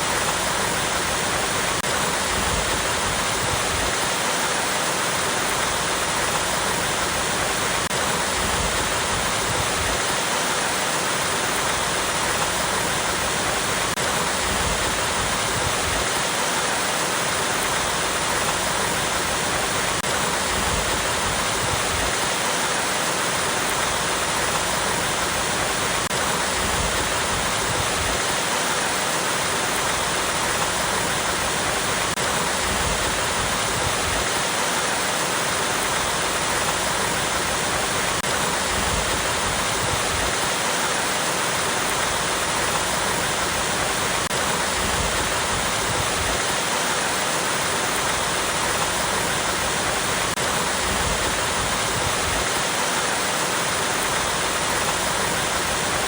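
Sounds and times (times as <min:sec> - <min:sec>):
waterfall cascading over rocks: 0:00.0 - 0:56.0.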